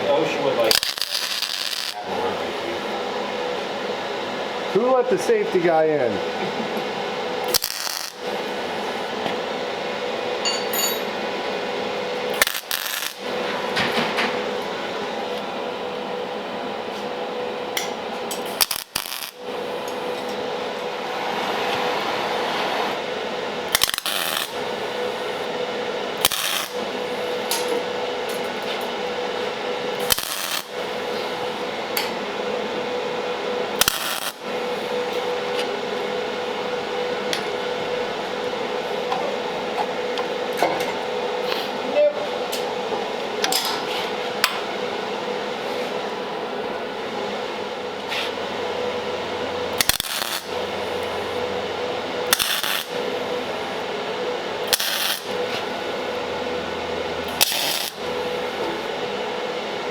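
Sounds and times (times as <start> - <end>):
sharp metallic clanks: 10.4 - 11.2.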